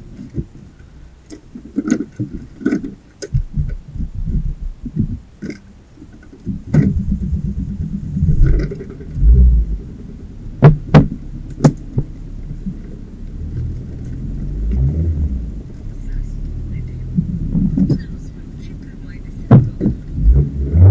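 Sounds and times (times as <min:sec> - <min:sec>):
car engine rumbling: 0:00.0 - 0:20.9
sharp knocks: 0:10.6 - 0:12.2.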